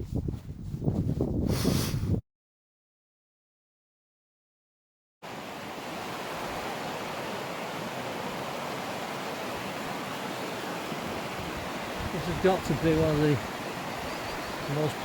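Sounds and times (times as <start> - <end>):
river water rushing: 5.2 - 15.0.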